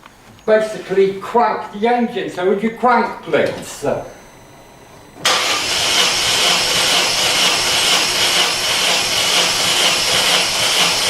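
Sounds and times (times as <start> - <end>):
engine cranking on starter motor: 5.2 - 11.0.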